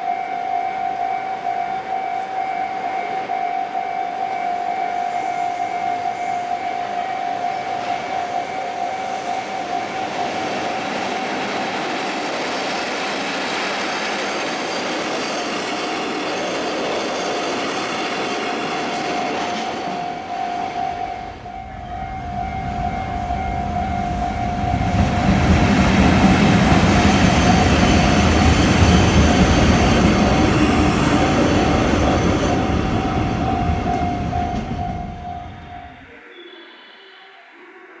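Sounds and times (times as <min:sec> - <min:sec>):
train rolling over rails: 0:07.4 - 0:36.1
level crossing warning bell: 0:20.6 - 0:36.1.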